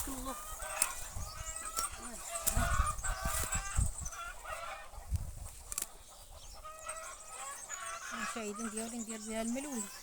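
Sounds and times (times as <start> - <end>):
chickens clucking: 0.0 - 10.0.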